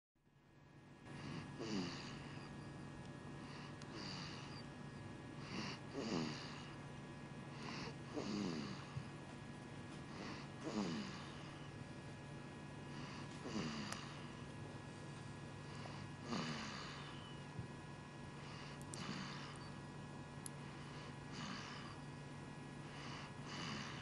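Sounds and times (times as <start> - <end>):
person snoring: 1.1 - 2.5, 3.4 - 4.6, 5.4 - 6.8, 7.5 - 9.0, 10.1 - 11.6, 12.9 - 14.3, 15.7 - 17.2, 18.4 - 19.7, 20.9 - 22.0, 22.9 - 24.0.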